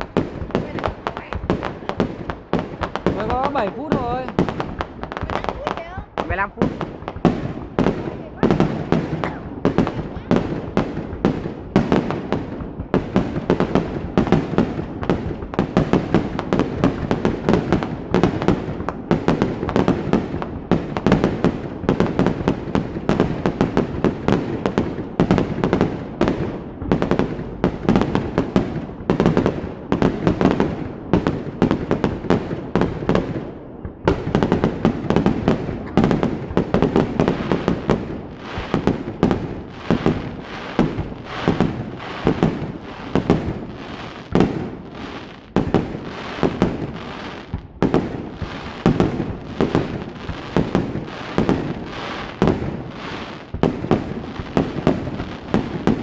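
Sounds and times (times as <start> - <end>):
fireworks bangs and crackles: 0.0 - 56.0.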